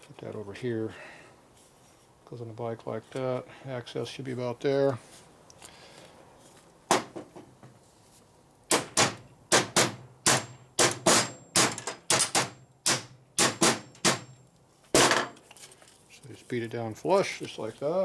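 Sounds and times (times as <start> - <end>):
hammer striking metal clamp: 8.7 - 14.4.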